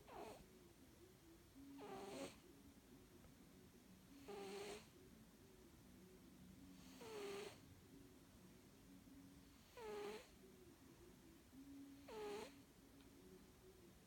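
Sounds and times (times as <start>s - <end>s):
cat snoring: 0.0s - 0.5s, 1.7s - 2.5s, 4.2s - 5.0s, 6.8s - 7.6s, 9.4s - 10.4s, 11.9s - 12.7s.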